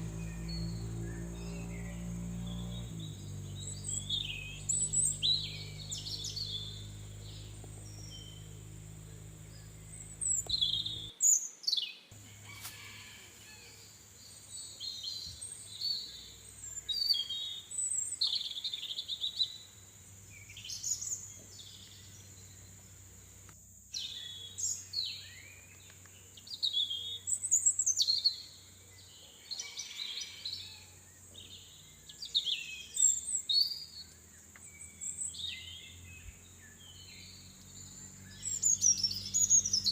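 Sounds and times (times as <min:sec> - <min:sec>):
low hum: 0:00.0 - 0:11.1
birds chirping: 0:00.0 - 0:39.9.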